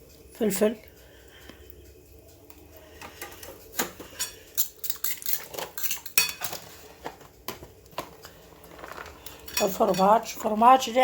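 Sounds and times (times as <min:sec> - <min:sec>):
metal utensil scraping a bowl: 0:04.1 - 0:07.2, 0:08.2 - 0:10.3.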